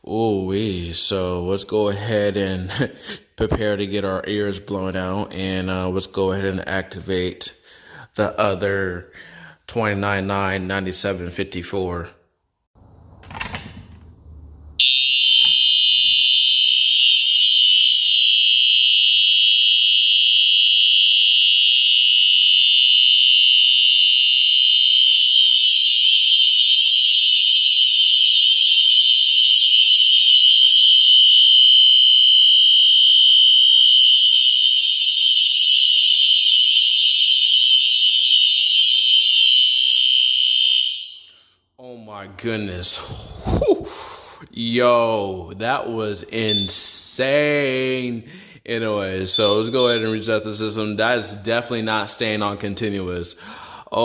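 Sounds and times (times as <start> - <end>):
fire alarm horn tone: 14.8 - 41.6, 49.3 - 50.3.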